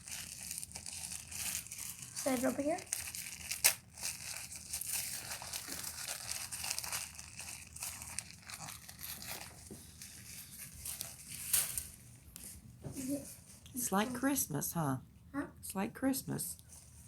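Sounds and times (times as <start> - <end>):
paper tearing: 0.0 - 12.0
paper crinkling and rustling: 0.0 - 13.6.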